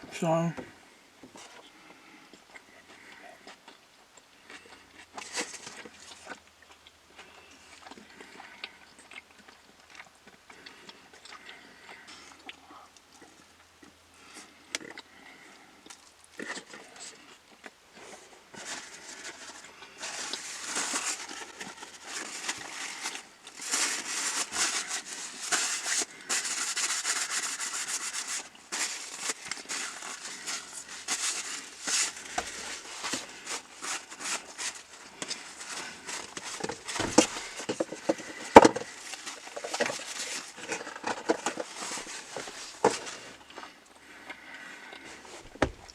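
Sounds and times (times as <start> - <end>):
chewing: 1.3 - 45.9
paper wrappers crinkling: 18.0 - 43.5.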